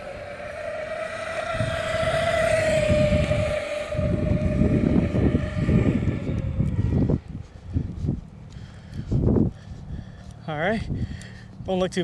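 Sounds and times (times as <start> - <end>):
electric motor whining: 0.0 - 7.9
wind buffeting microphone: 0.0 - 12.0.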